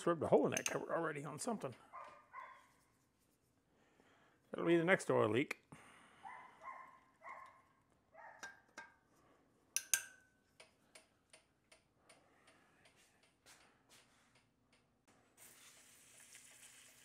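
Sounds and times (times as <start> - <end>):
metallic clicks of hand tools: 0.5 - 0.9, 9.8 - 13.7
ringing metal clink: 9.8 - 10.4.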